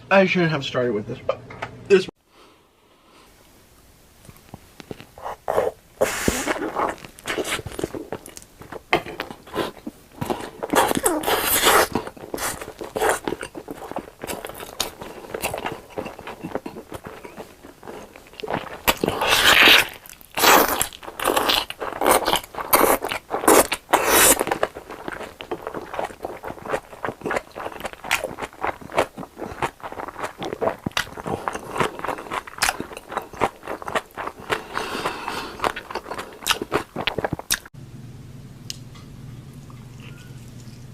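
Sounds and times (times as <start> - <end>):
wet chewing: 4.2 - 37.7, 39.5 - 40.9
crunchy bites: 4.4 - 37.7.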